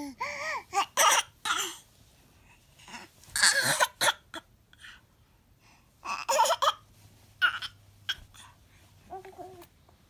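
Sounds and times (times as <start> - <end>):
child coughing: 3.4 - 4.5.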